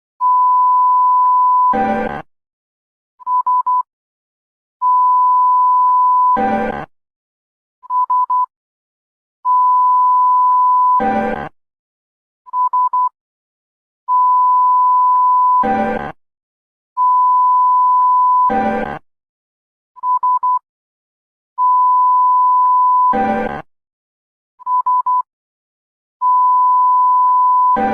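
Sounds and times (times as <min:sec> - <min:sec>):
short beeps: 0:00.2 - 0:02.0, 0:09.5 - 0:11.3, 0:14.1 - 0:15.8, 0:21.6 - 0:23.3, 0:24.6 - 0:25.3, 0:26.2 - 0:27.9
alarm beep ending in buzz: 0:01.6 - 0:02.2, 0:06.2 - 0:06.9, 0:10.7 - 0:11.5, 0:15.4 - 0:16.2, 0:26.3 - 0:27.9.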